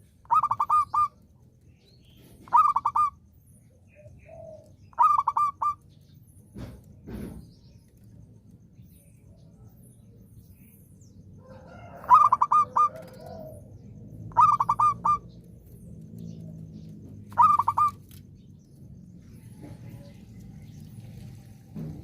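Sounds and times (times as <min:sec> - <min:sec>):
dove cooing: 0:00.2 - 0:01.2, 0:02.2 - 0:03.2, 0:03.9 - 0:05.8, 0:11.5 - 0:15.4, 0:17.2 - 0:18.2.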